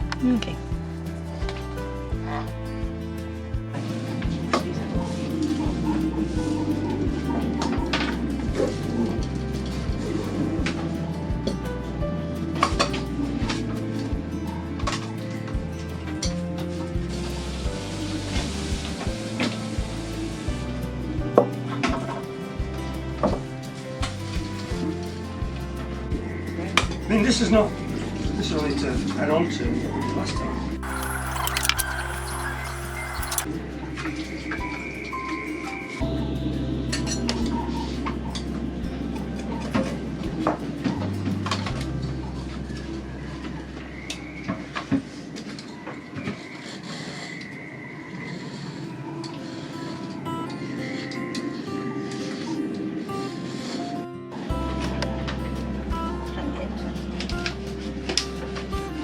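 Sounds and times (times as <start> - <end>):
music with steady bass beat: 0.0 - 29.1, 54.5 - 59.0.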